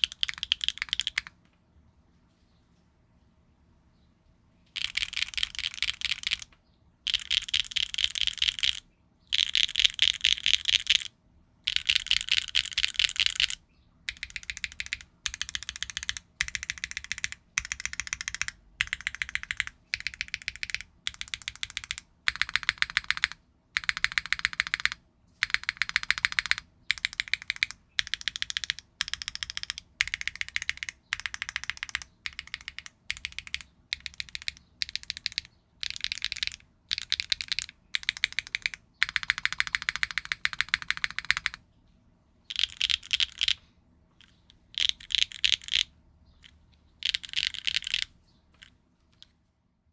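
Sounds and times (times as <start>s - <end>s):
clacky keyboard keystrokes: 0.0s - 1.3s, 4.8s - 6.5s, 7.1s - 11.1s, 11.7s - 41.6s, 42.5s - 43.6s, 47.0s - 48.7s.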